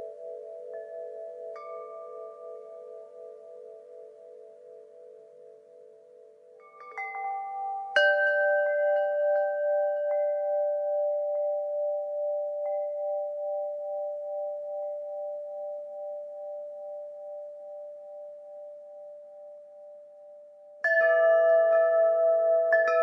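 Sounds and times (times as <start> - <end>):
metal wind chimes ringing: 6.8 - 13.2.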